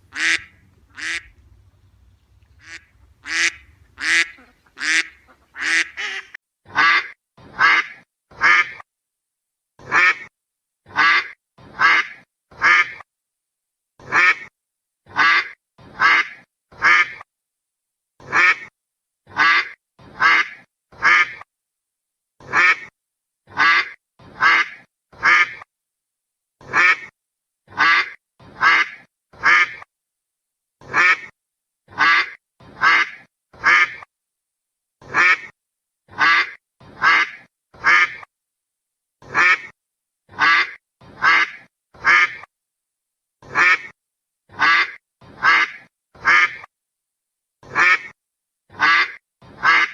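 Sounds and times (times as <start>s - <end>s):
duck quacking: 0.0s - 1.5s, 2.6s - 8.8s, 9.8s - 10.3s, 10.9s - 13.1s, 14.0s - 14.5s, 15.1s - 17.3s, 18.2s - 18.7s, 19.3s - 21.5s, 22.4s - 22.9s, 23.5s - 25.7s, 26.6s - 29.9s, 30.8s - 34.1s, 35.0s - 38.3s, 39.2s - 42.5s, 43.4s - 46.7s, 47.6s - 49.9s.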